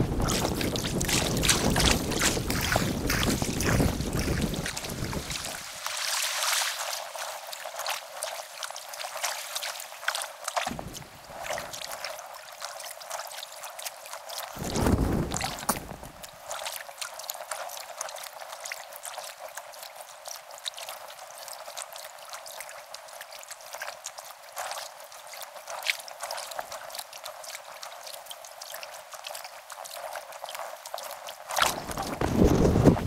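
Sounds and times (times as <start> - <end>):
paddle splashes: 0.0 - 17.9, 31.0 - 33.0
dripping trickling water: 0.0 - 21.0
low rumble: 10.7 - 11.6.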